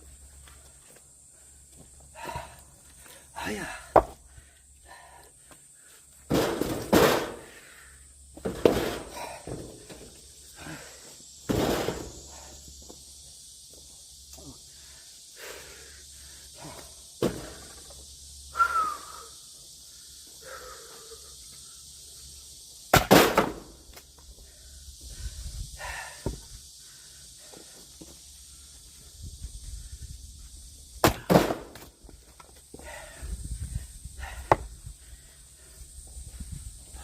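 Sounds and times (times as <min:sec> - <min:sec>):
axe splitting firewood: 0:03.9 - 0:04.2, 0:06.3 - 0:07.4, 0:22.9 - 0:23.6, 0:31.0 - 0:31.9.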